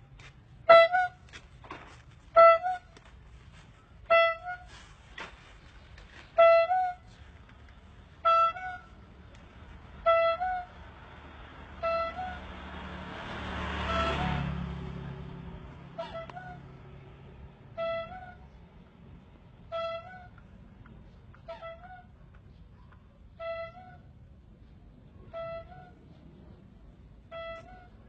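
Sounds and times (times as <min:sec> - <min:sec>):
rubber-bulb horn honking: 0:00.6 - 0:01.4, 0:02.3 - 0:03.1, 0:04.0 - 0:05.4, 0:06.0 - 0:07.2, 0:08.0 - 0:09.1, 0:09.8 - 0:11.0, 0:11.7 - 0:18.6, 0:19.6 - 0:20.5, 0:23.3 - 0:24.2, 0:25.2 - 0:26.2, 0:27.2 - 0:28.0.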